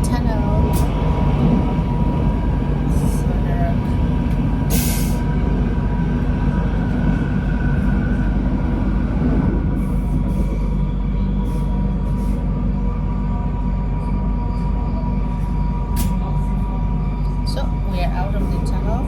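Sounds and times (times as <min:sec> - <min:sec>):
train wheels rumbling on rails: 0:00.0 - 0:19.0.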